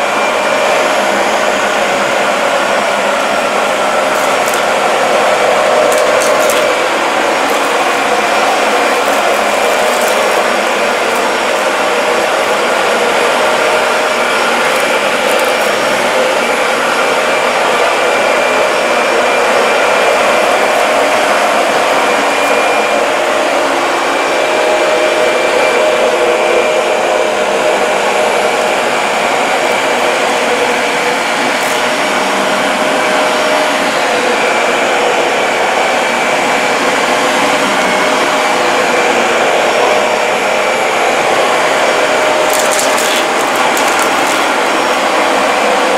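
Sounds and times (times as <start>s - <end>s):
vacuum cleaner running: 0.0s - 45.9s.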